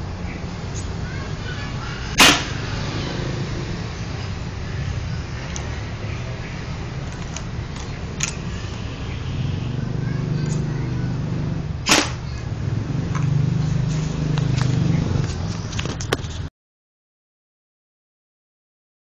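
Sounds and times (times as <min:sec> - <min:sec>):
airgun shot: 0:02.2 - 0:02.7, 0:11.8 - 0:12.3
mechanical clicks of gun: 0:07.0 - 0:08.4.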